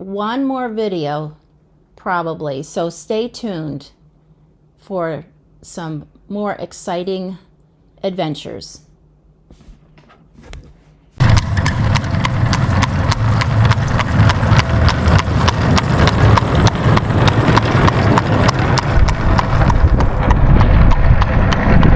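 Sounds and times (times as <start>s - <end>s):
horse hooves clip-clopping: 9.5s - 21.6s
low rumble: 11.2s - 21.9s.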